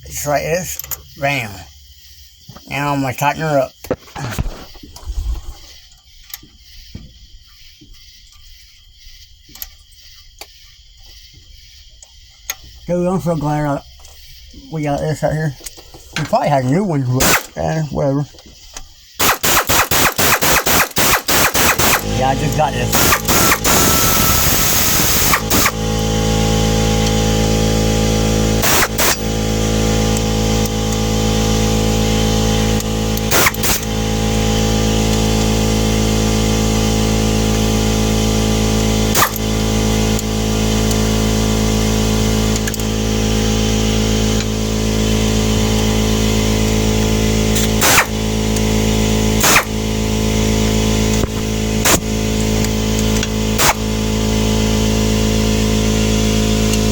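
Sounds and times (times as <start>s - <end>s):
steady mechanical drone: 12.5s - 56.9s
sharp clicks: 17.2s - 17.7s, 18.3s - 26.1s, 28.6s - 29.3s, 32.8s - 34.0s, 39.1s - 39.5s, 42.5s - 43.0s, 47.5s - 48.7s, 49.4s - 49.8s, 51.1s - 53.9s.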